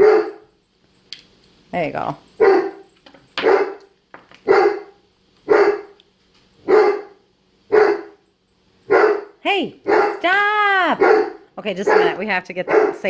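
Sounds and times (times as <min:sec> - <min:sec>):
dog barking: 0:00.0 - 0:00.5, 0:02.4 - 0:06.0, 0:06.6 - 0:08.2, 0:08.9 - 0:10.2, 0:11.0 - 0:13.0.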